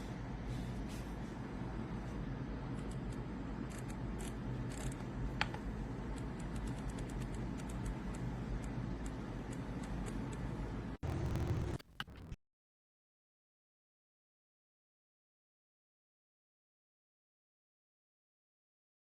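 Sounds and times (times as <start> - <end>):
steady low hum: 0.0 - 12.4.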